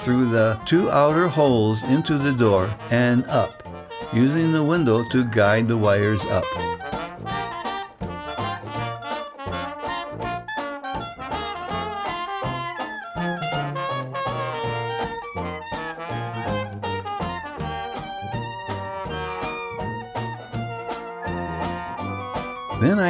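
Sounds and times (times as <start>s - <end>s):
lively brass band tune: 0.0s - 23.0s.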